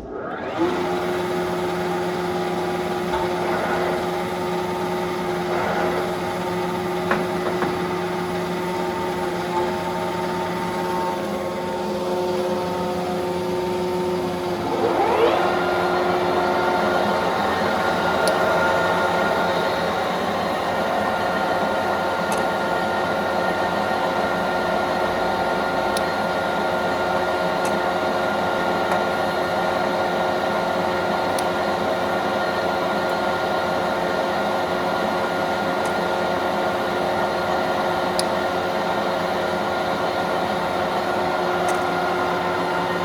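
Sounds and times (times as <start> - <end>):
lathe running hum: 0.0 - 43.0.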